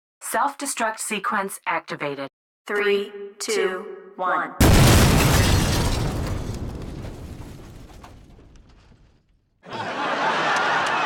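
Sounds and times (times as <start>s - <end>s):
loud explosion blast: 4.6s - 9.1s.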